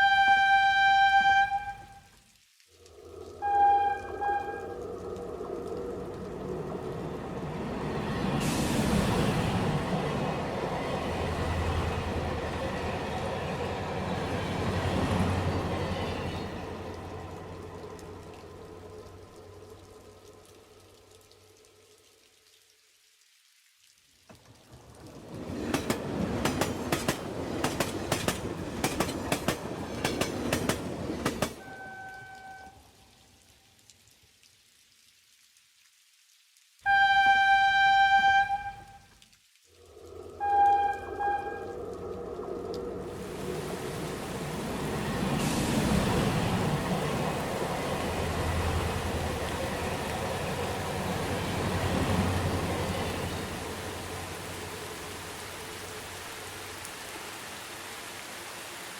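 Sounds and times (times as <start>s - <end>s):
train rumbling on rails: 3.0s - 20.2s, 24.6s - 32.8s, 40.0s - 56.8s
hiss: 8.2s - 9.8s, 42.4s - 58.8s
train wheels clickety-clack: 25.4s - 31.7s.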